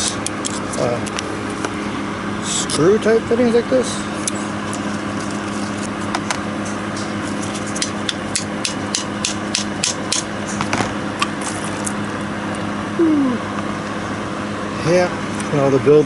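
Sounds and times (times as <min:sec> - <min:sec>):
steady low hum: 0:00.0 - 0:16.0
sharp metallic hand tool clicks: 0:07.8 - 0:10.3.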